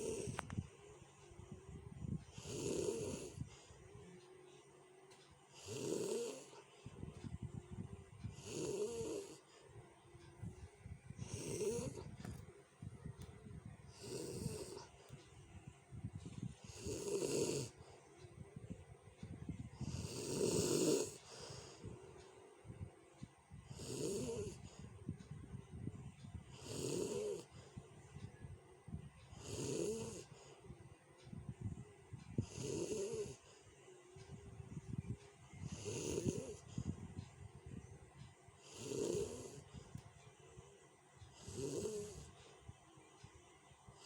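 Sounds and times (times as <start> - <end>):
person snoring loudly: 0.0 - 0.4, 2.3 - 3.5, 5.5 - 6.6, 8.3 - 9.4, 11.2 - 12.2, 13.9 - 14.9, 16.6 - 17.8, 19.8 - 21.6, 23.7 - 24.7, 26.5 - 27.5, 29.3 - 30.3, 32.4 - 33.4, 35.7 - 36.7, 38.6 - 39.7, 41.4 - 42.3.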